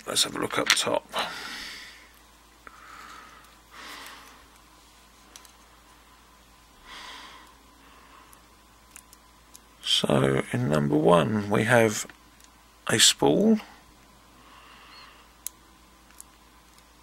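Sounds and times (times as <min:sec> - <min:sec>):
soft breaths: 0:01.1 - 0:05.4, 0:06.8 - 0:08.7, 0:13.6 - 0:15.4.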